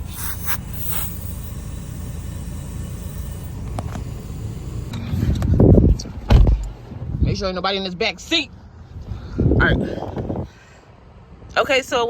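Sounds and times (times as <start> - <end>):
air hose hissing into tyre: 0.0 - 4.9
loud low buffet: 0.0 - 5.5
steady low rumble: 0.0 - 7.4.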